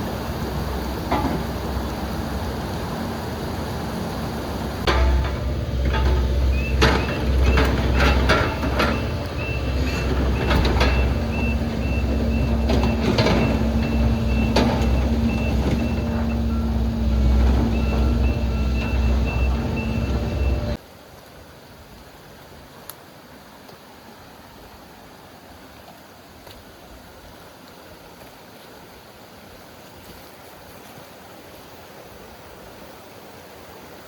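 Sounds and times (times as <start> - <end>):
low engine rumble: 0.0 - 20.8
knocks: 4.9 - 12.0.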